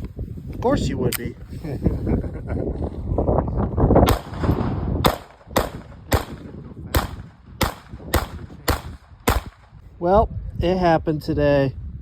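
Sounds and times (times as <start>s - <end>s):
gunshots: 4.0s - 9.8s.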